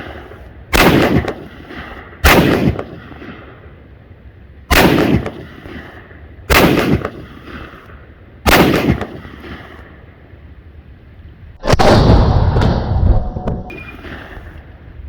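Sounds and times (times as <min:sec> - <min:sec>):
rifle shots with echo: 0:00.0 - 0:03.8, 0:04.7 - 0:07.8, 0:08.4 - 0:10.0.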